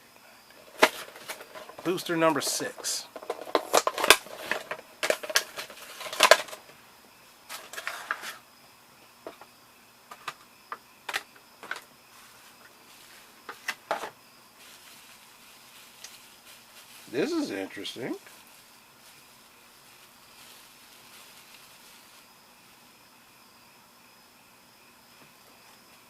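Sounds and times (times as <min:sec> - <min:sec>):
plastic packaging crinkling and tearing: 0:14.6 - 0:22.3.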